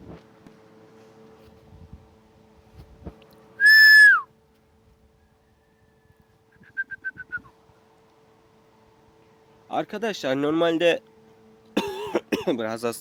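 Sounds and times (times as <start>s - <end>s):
person whistling loudly: 3.6s - 4.3s, 6.6s - 7.5s.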